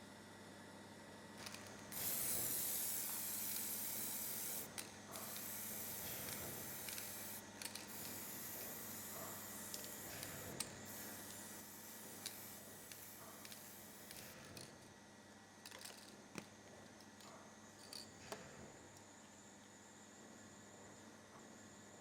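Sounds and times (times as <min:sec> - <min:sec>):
aerosol spray can hissing: 0:01.9 - 0:14.4.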